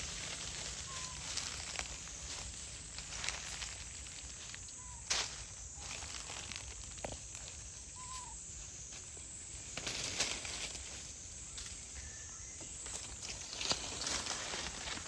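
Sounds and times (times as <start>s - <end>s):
rustling and scuffling: 0.0s - 11.9s
faint chirp-like call: 0.8s - 2.1s, 4.7s - 5.2s, 7.9s - 8.4s.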